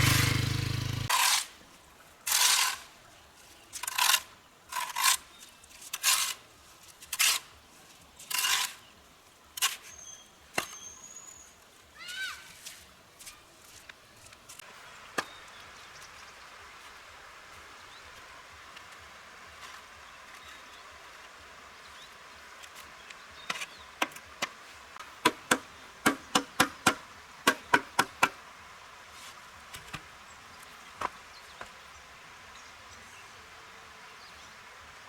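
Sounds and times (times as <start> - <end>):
sharp knocks: 25.2 - 28.4.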